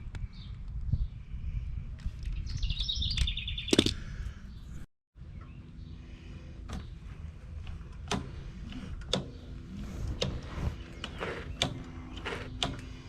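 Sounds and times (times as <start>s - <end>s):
bird chirping trill: 2.3s - 3.8s, 9.1s - 13.0s.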